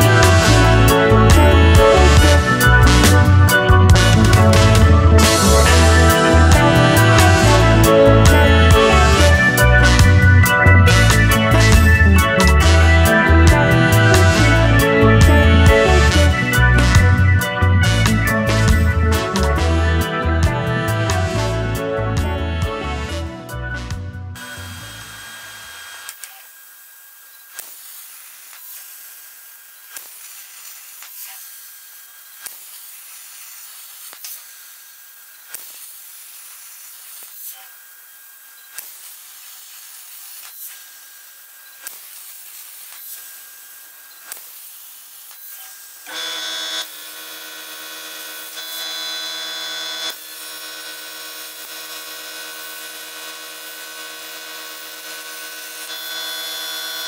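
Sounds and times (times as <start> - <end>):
humming whine: 0.0 - 27.7, 45.3 - 57.0
plasma cutter hissing: 24.4 - 57.0.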